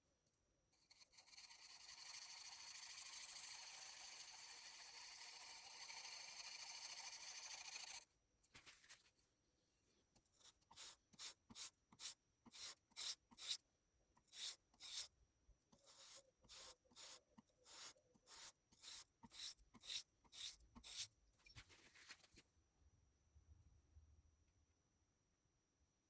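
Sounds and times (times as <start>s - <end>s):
chisel scratching on sandpaper: 0.9s - 8.0s, 10.7s - 13.6s, 14.3s - 15.1s, 15.8s - 22.3s.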